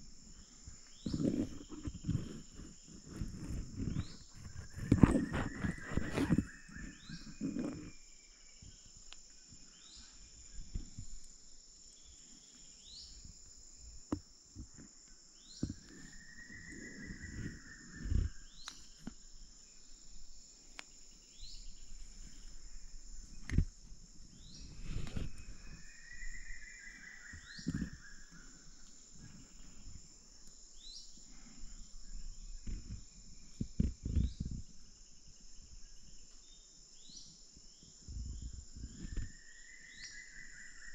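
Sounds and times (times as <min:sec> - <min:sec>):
high insect drone: 0:00.0 - 0:40.9
birds whistling: 0:03.4 - 0:08.0, 0:15.5 - 0:19.1, 0:24.3 - 0:29.7, 0:38.9 - 0:40.9
long arching bird calls: 0:15.7 - 0:19.5.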